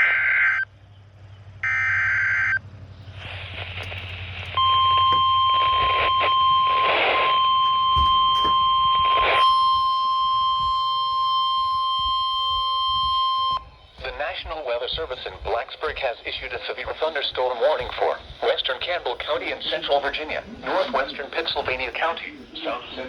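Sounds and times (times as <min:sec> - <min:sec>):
high warning alarm tone: 0:01.6 - 0:02.6, 0:03.2 - 0:23.0
high beeping tones: 0:04.6 - 0:14.0
warbling data tone: 0:04.6 - 0:14.0.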